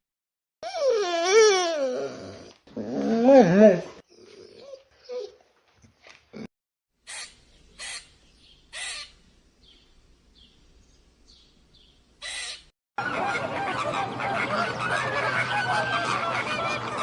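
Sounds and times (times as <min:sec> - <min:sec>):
bird harsh calls: 0:07.0 - 0:10.6, 0:11.3 - 0:17.0
chorus of many birds: 0:11.3 - 0:17.0.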